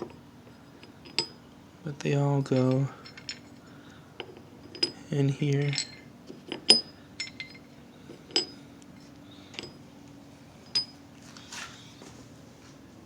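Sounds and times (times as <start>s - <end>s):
small metal clinks: 0.0s - 1.4s, 2.4s - 9.9s, 10.6s - 11.1s.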